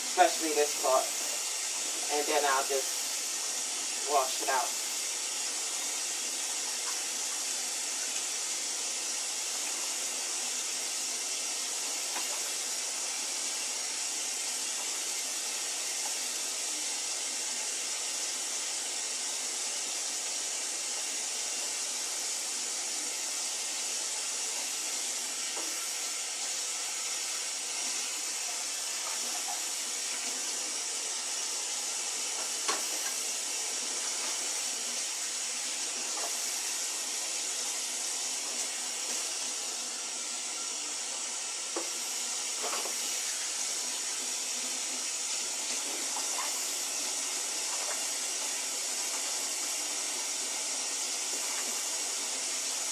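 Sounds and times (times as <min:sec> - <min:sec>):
tap running into sink: 0:12.0 - 0:12.6, 0:32.3 - 0:33.3, 0:41.7 - 0:43.4.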